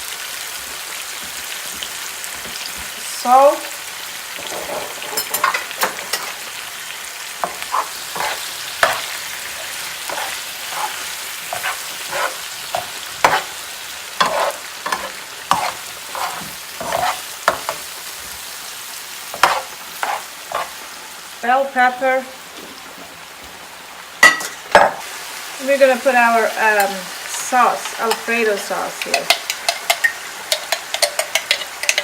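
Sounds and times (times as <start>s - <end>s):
vegetables sizzling in frying pan: 0.0s - 32.0s
utensil scraping pan: 4.4s - 6.5s, 7.4s - 13.6s, 14.2s - 17.9s, 19.3s - 20.8s.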